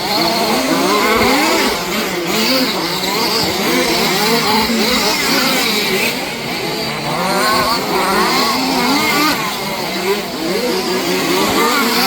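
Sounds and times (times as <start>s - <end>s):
small two-stroke engines revving: 0.0s - 12.0s.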